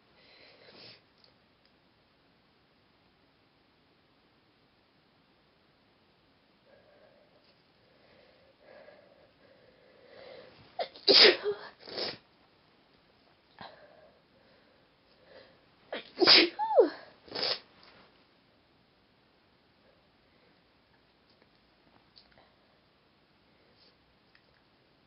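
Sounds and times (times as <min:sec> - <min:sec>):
woman sneezing: 0:10.8 - 0:12.2, 0:16.0 - 0:17.6.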